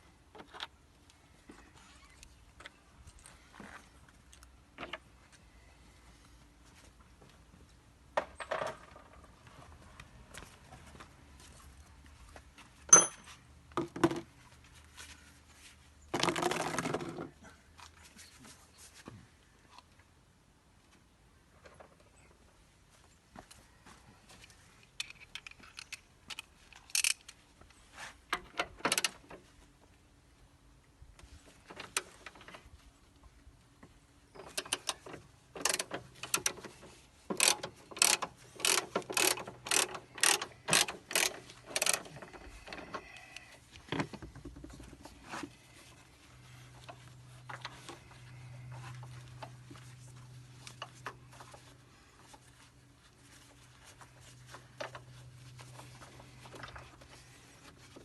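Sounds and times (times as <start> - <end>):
hand tools clicking on car parts: 34.4 - 43.5.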